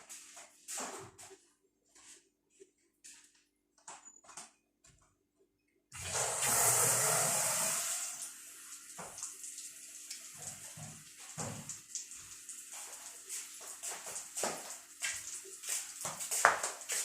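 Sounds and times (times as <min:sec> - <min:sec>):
water rushing through pipes: 0:05.9 - 0:16.0.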